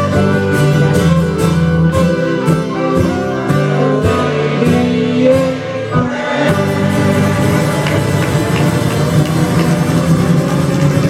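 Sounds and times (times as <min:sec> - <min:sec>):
folk band playing: 0:00.0 - 0:11.0
audience singing along: 0:02.7 - 0:11.0.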